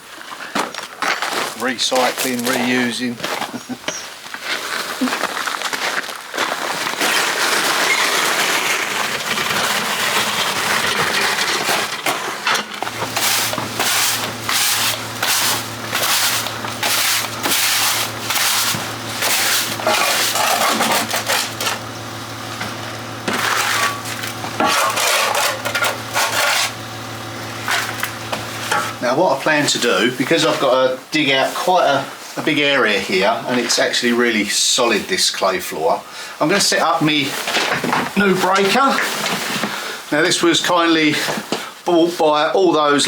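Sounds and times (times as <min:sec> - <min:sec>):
soil and stones crunching: 0:00.1 - 0:34.5
steady low hum: 0:12.0 - 0:30.2.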